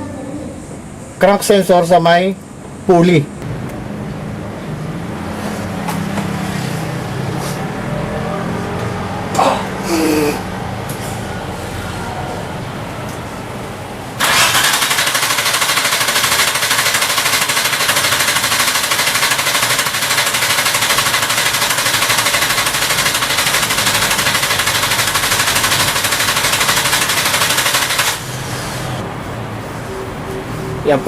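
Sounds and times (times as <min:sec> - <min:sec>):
car engine cranking: 0:14.2 - 0:29.0.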